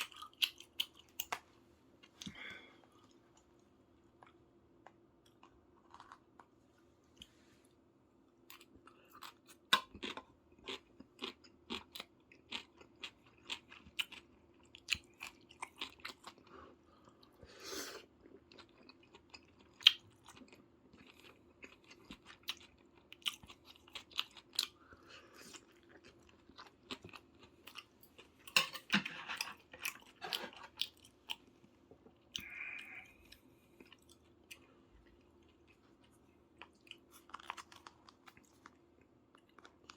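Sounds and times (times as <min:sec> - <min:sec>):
faint steady hum: 0:00.0 - 0:39.9
person chewing and biting: 0:08.5 - 0:16.4, 0:36.5 - 0:38.8.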